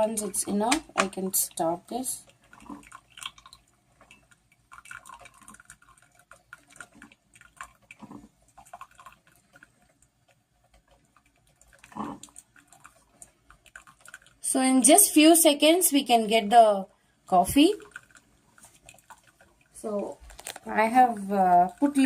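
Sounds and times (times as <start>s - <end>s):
coffee dripping into a cup: 2.2s - 14.5s, 17.6s - 20.7s.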